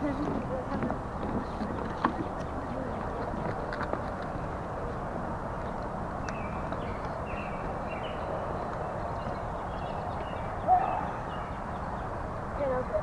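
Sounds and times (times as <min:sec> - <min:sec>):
small birds chirping: 0:05.6 - 0:13.0
loud bird call: 0:06.3 - 0:12.1.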